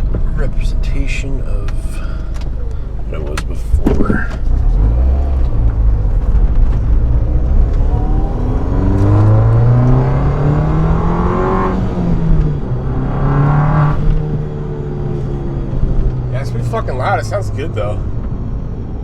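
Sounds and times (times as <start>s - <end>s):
car engine accelerating: 0.0s - 19.0s.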